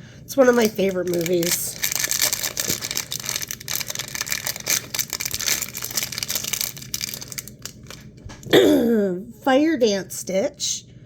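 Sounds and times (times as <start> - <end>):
packaging crinkling and tearing: 0.3 - 8.5.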